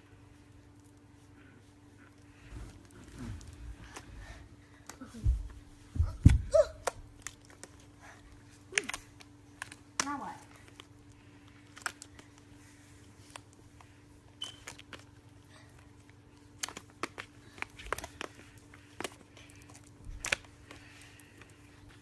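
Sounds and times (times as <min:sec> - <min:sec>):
slime clicking and popping: 0:08.7 - 0:10.9.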